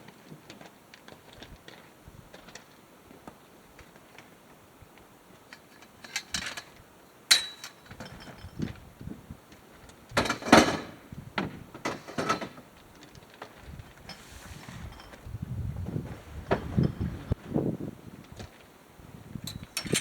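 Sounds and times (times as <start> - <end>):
objects knocking and scraping: 10.1 - 17.4.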